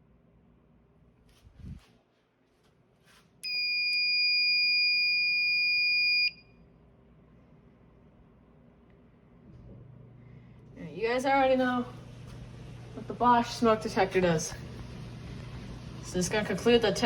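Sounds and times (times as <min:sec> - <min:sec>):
smoke detector high-pitched tone: 0:03.4 - 0:06.5.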